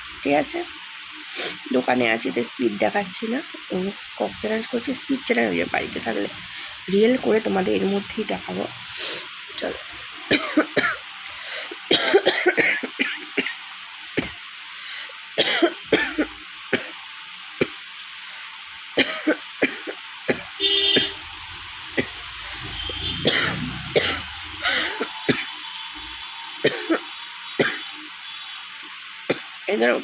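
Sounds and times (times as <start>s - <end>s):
woman coughing hoarsely: 10.3s - 11.0s, 11.8s - 13.5s, 15.4s - 17.0s, 19.0s - 21.1s, 23.2s - 25.5s, 26.6s - 27.8s
brief steady tone: 22.0s - 28.7s.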